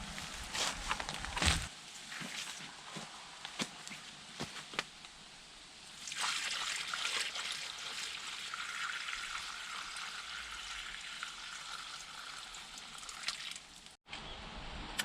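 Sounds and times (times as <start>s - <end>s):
water pouring trickle: 6.0s - 14.0s.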